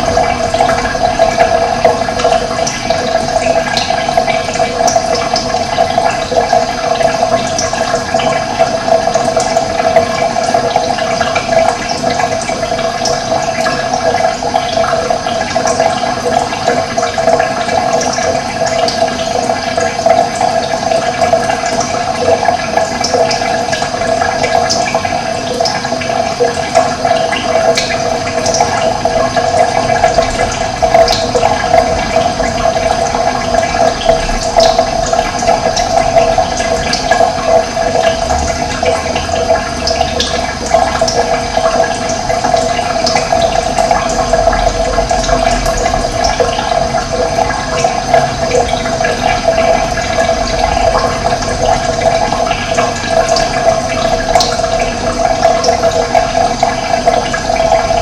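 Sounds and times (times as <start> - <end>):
running water rushing: 0.0 - 58.0.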